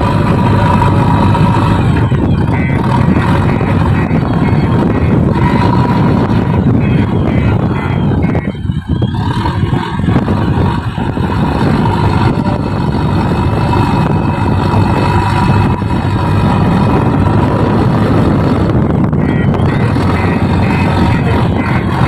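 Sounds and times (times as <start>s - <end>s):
diesel engine running under load: 0.0s - 22.0s.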